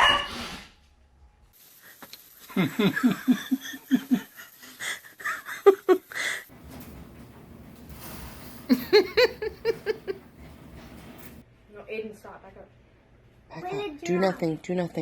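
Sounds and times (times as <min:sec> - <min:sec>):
person laughing: 0:02.4 - 0:06.5, 0:08.7 - 0:10.3.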